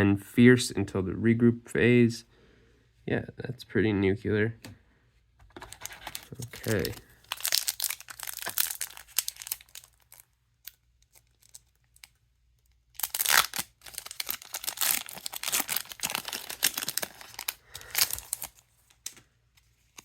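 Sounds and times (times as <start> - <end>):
wrapper crinkling and tearing: 5.6 - 12.2, 12.9 - 19.2.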